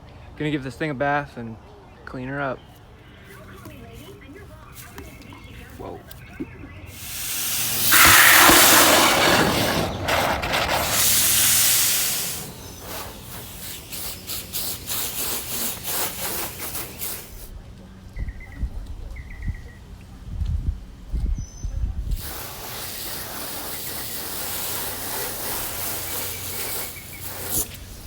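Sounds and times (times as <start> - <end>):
water spraying onto car: 6.9 - 17.5, 22.1 - 28.0.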